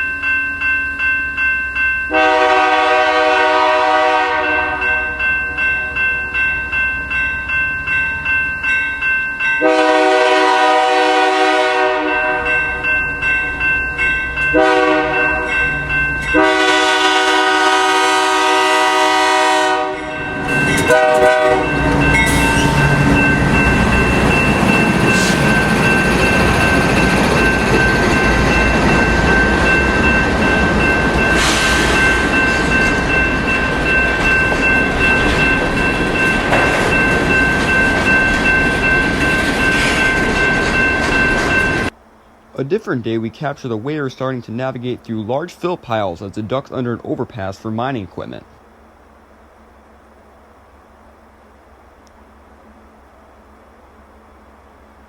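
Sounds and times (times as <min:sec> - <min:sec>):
locomotive air horn chords: 0:02.1 - 0:05.2, 0:09.6 - 0:12.6, 0:14.5 - 0:15.6, 0:16.3 - 0:22.1, 0:31.3 - 0:32.1
train wheels rumbling on rail: 0:02.1 - 0:42.8.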